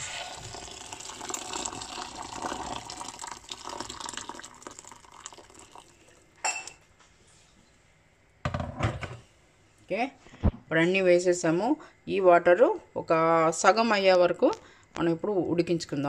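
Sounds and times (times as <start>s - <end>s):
hot water pouring into a pot: 0.0s - 6.2s.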